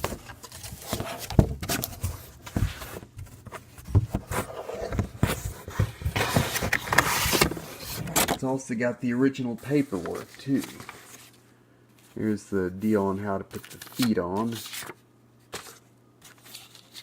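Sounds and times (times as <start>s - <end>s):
paper rustling: 0.0s - 8.4s, 9.6s - 11.4s, 12.0s - 17.0s
cardboard box knocks and scrapes: 0.8s - 8.3s.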